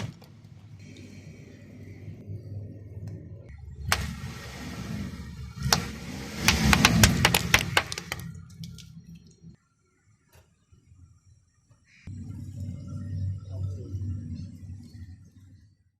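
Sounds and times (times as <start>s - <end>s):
engine and tyre rumble: 0.0s - 9.6s
tyre crushing objects with cracks: 5.7s - 8.3s.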